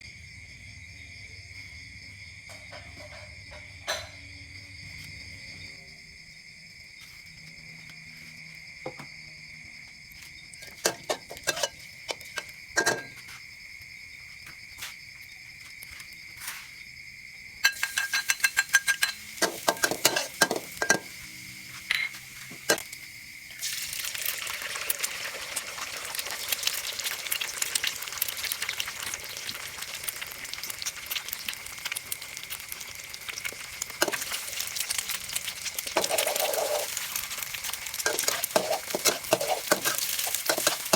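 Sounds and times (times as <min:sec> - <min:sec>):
food sizzling in a hot pan: 0:10.6 - 0:13.3, 0:17.6 - 0:40.9
utensils clinking on pan and dishes: 0:10.6 - 0:13.3, 0:17.6 - 0:21.2, 0:21.8 - 0:23.0, 0:33.4 - 0:40.9.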